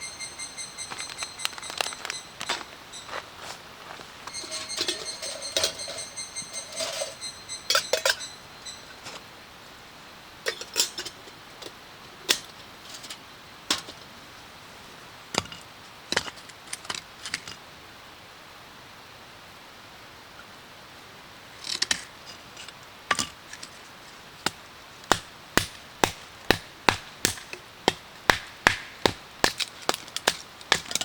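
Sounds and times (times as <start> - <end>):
scattered clicks and knocks: 4.3 - 8.4
metal gear clinking and ringing: 4.3 - 8.8.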